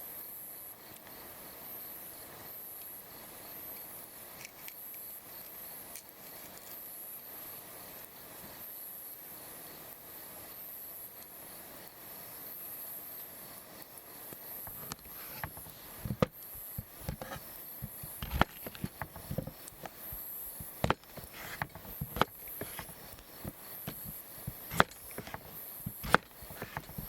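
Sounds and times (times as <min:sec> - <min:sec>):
faint high hiss: 0:00.0 - 0:27.0
sharp knocks and clicks: 0:14.7 - 0:27.0.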